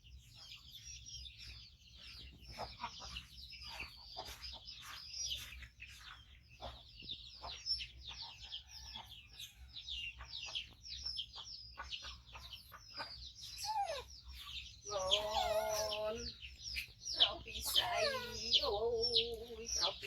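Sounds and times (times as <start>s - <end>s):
baby monkey squeaking: 12.1s - 20.0s.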